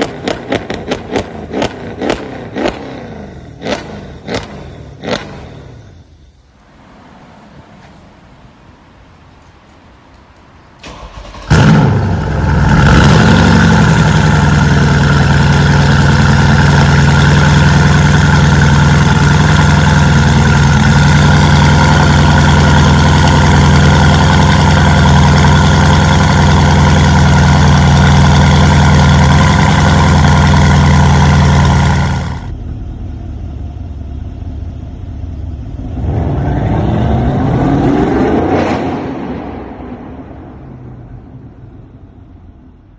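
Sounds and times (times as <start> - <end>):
engine revving: 0.0 - 6.1, 10.8 - 32.6, 35.7 - 39.5
car engine flaring: 0.0 - 9.2, 10.8 - 42.9
loud car engine idling: 11.4 - 36.6.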